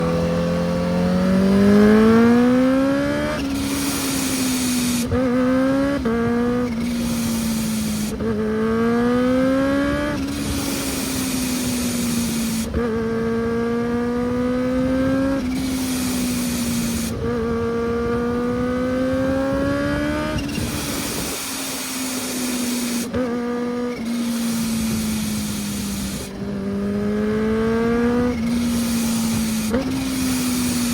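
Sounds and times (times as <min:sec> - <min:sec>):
motorcycle engine revving: 0:00.0 - 0:30.9
rushing hiss: 0:03.5 - 0:05.1, 0:06.8 - 0:08.2, 0:10.3 - 0:12.7, 0:15.6 - 0:17.2, 0:20.6 - 0:23.1, 0:24.1 - 0:26.3, 0:28.5 - 0:30.9.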